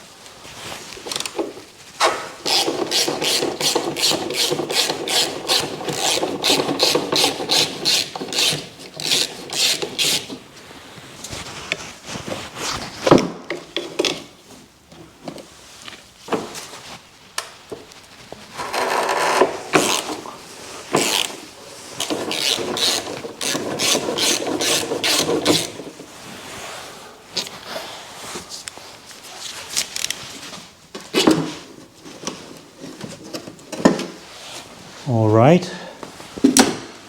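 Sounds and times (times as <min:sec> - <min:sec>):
hand tool clicking and rasping: 0:02.0 - 0:10.4, 0:18.6 - 0:26.0.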